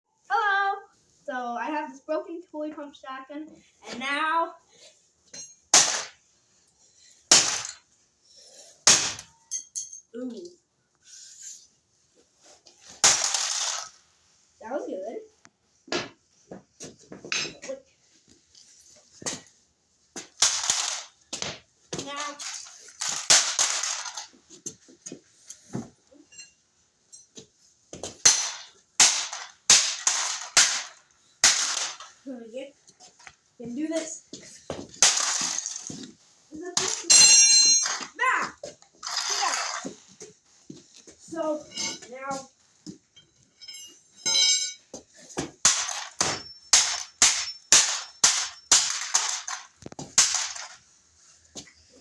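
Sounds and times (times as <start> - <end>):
sharp cracking blows: 5.7 - 6.2, 7.3 - 7.8, 8.8 - 9.4, 13.0 - 14.0, 22.0 - 24.3, 28.2 - 32.2, 45.6 - 50.8
plastic toy being smashed: 5.8 - 6.2, 7.3 - 7.8, 8.8 - 9.4, 13.0 - 14.0, 20.2 - 21.2, 22.0 - 24.3, 28.2 - 32.2, 35.0 - 36.1, 39.0 - 39.9, 45.6 - 50.8
plastic toy knocks and rattles: 45.6 - 50.8.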